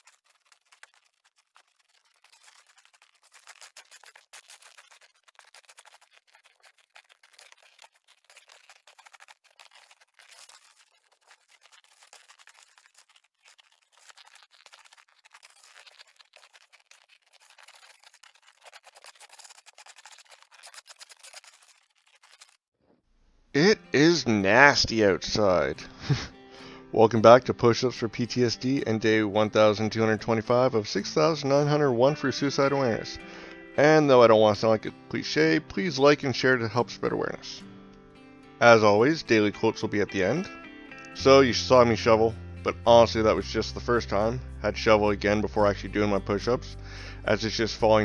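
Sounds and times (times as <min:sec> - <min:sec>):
snow shovel scraping snow: 0:25.4 - 0:26.8.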